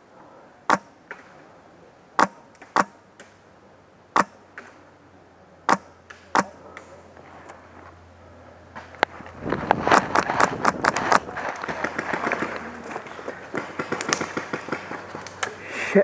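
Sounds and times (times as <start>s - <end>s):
airsoft gun shots: 2.2s - 3.0s, 4.2s - 4.4s, 5.7s - 6.6s.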